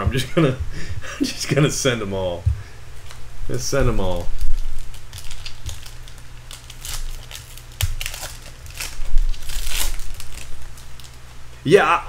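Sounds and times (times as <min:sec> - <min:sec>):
foil wrappers crinkling: 0:03.9 - 0:11.3.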